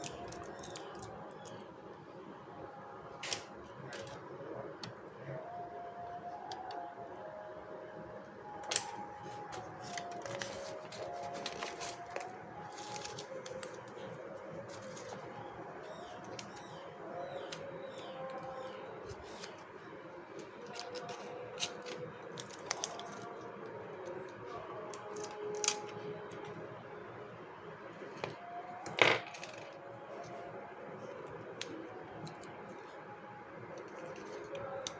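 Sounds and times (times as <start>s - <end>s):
plastic bag rustling and clicking: 8.7s - 13.9s.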